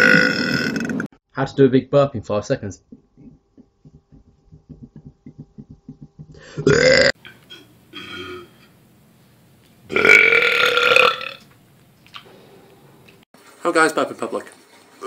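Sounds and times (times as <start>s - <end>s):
person burping loudly: 0.0s - 1.1s, 6.4s - 8.6s, 9.9s - 11.4s.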